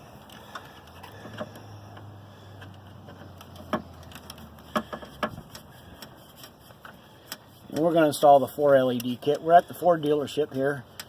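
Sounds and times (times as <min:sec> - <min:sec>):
hand tools clicking on screws: 0:00.2 - 0:07.9.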